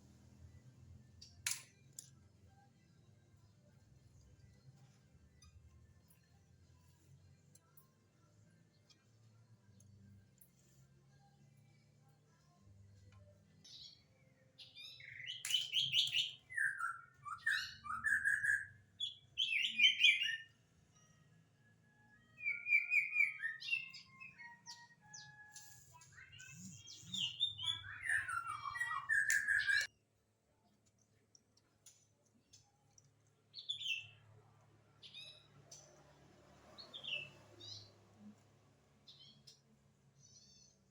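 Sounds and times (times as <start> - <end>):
songbird chirping and whistling: 13.6 - 21.1, 22.2 - 29.9, 33.5 - 34.2.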